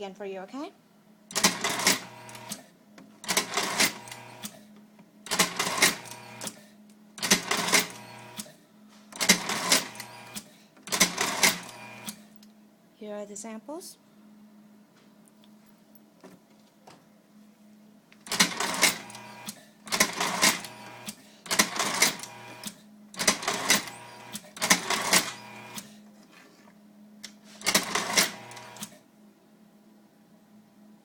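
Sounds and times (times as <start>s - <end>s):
twist-tie machine whir and clack: 1.3s - 4.6s, 5.3s - 6.6s, 7.2s - 12.3s, 18.2s - 25.9s, 27.6s - 29.0s.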